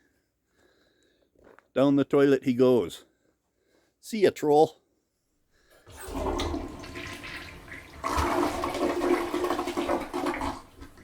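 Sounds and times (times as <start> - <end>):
toilet flushing: 5.8 - 11.0.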